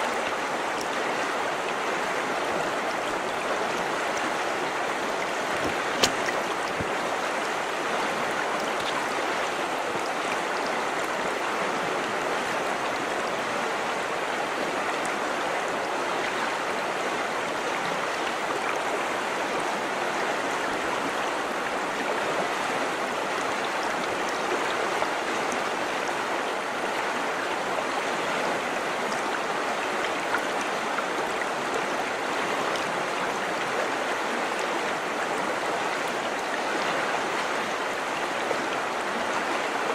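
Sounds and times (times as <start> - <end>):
river flowing over rocks: 0.0 - 39.9
small water splashes: 0.1 - 11.9.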